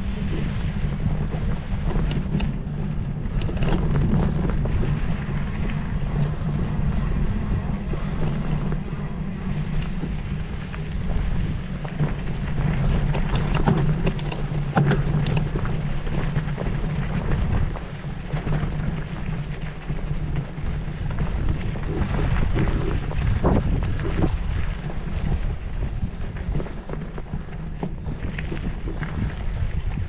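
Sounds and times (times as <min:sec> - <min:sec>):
wind buffeting microphone: 0:00.0 - 0:30.0
sharp clicks and rattles: 0:00.3 - 0:06.4, 0:09.5 - 0:24.8.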